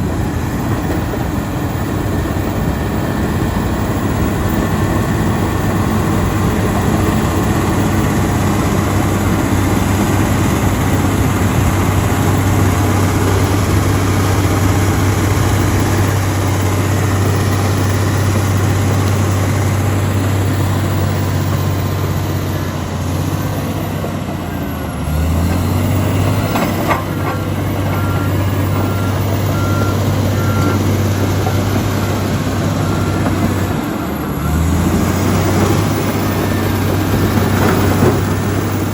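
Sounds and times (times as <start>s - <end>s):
bulldozer diesel engine running: 0.0s - 38.9s
reversing alarm beeps: 26.1s - 37.7s.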